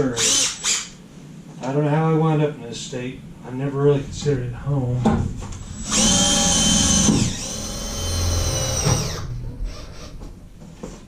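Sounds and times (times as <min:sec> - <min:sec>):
cordless drill motor whine: 0:05.7 - 0:10.2.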